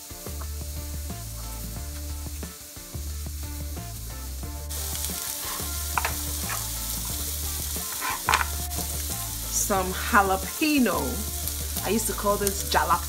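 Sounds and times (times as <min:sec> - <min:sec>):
food sizzling in frying pan: 0:00.0 - 0:13.0
utensil scraping and tapping: 0:05.1 - 0:06.7, 0:07.8 - 0:08.6.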